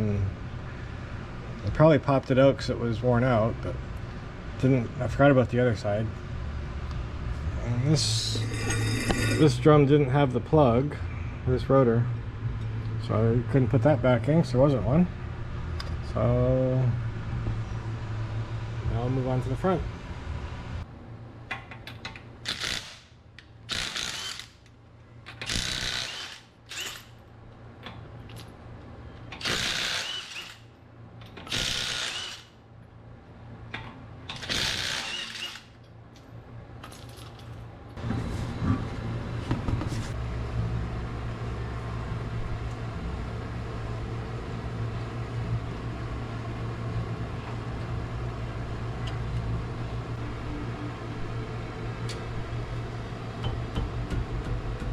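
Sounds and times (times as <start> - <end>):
steady machine hum: 0.0 - 21.5, 23.2 - 54.9
short bursts of tool noise: 23.7 - 24.5, 25.4 - 27.1, 29.4 - 30.6, 31.5 - 32.5, 34.4 - 35.7.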